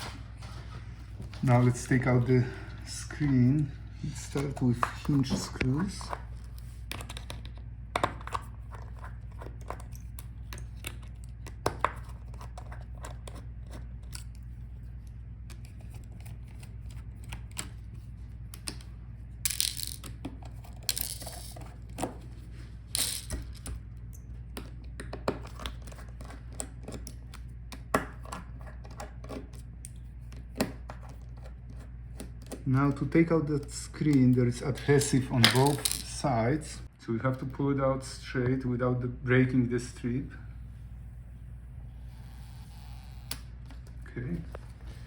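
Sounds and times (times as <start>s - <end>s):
low steady hum: 0.0s - 45.0s
parts scraping and rustling: 19.4s - 23.8s, 34.9s - 36.4s.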